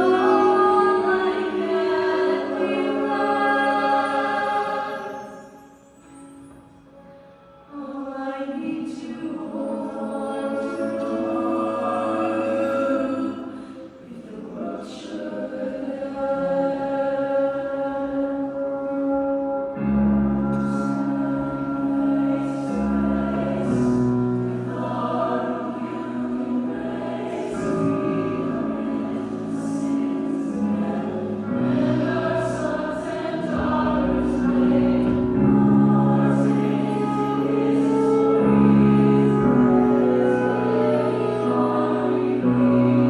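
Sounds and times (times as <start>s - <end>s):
choir-like chords: 0.0s - 43.0s.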